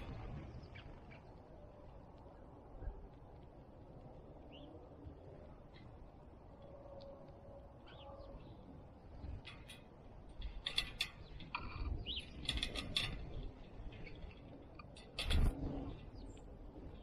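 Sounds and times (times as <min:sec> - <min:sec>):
small birds chirping: 0:00.0 - 0:03.3, 0:04.2 - 0:06.3, 0:07.7 - 0:09.8, 0:10.7 - 0:15.0, 0:15.8 - 0:17.0.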